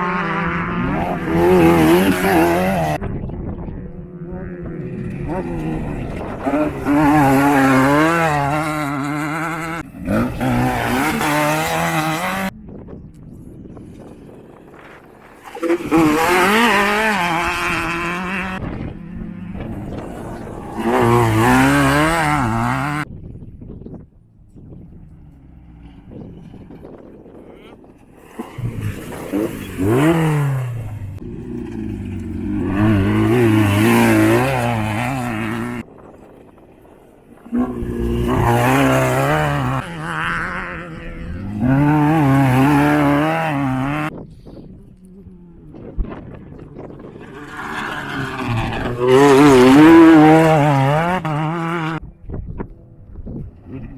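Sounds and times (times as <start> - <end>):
off-road engine revving hard: 0.0 - 3.0, 4.1 - 12.5, 15.0 - 23.1, 27.6 - 35.8, 37.5 - 44.2, 45.4 - 52.0.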